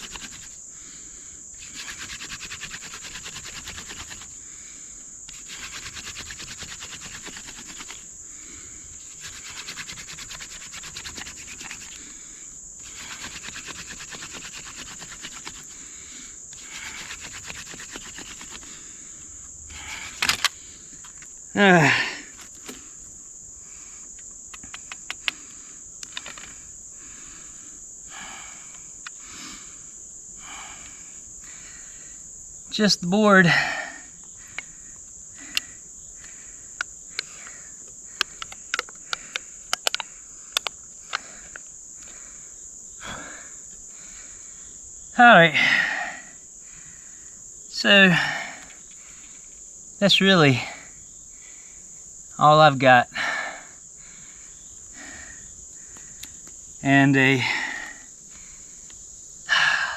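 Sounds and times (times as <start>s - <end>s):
hand drill rasping into wood: 0.0s - 0.5s, 1.6s - 4.3s, 5.3s - 8.1s, 9.1s - 12.0s, 12.8s - 15.8s, 16.6s - 18.7s
insects buzzing: 0.0s - 59.9s.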